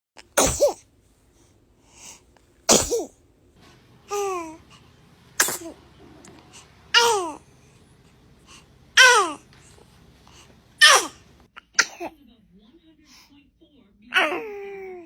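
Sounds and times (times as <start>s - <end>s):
baby sneezing: 0.3s - 0.8s, 2.7s - 3.2s, 5.4s - 5.8s, 6.9s - 7.4s, 9.0s - 9.4s, 10.8s - 12.1s.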